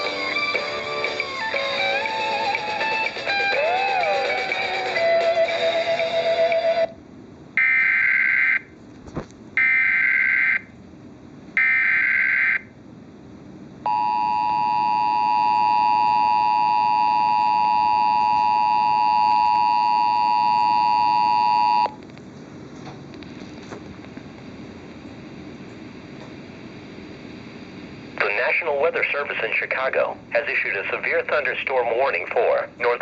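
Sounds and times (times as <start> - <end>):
two-tone attention signal: 13.9 - 22.0
faint radio hiss: 23.2 - 33.0.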